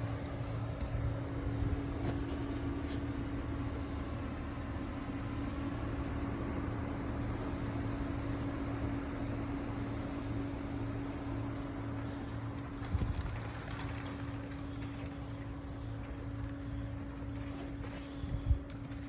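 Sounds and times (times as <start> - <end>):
air conditioner units humming: 0.0 - 19.0
fans rushing: 8.8 - 19.0.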